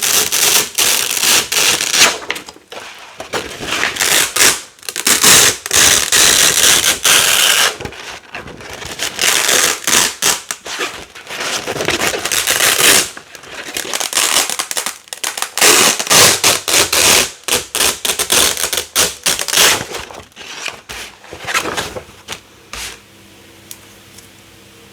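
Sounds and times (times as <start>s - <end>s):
velcro ripping apart: 0.0s - 2.4s, 3.6s - 7.9s, 8.9s - 19.9s.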